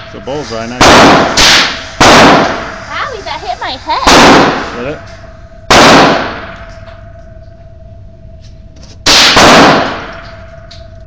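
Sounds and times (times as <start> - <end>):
rifle shots cracking: 0.8 - 2.8, 4.0 - 4.8, 5.7 - 6.7, 9.0 - 10.3.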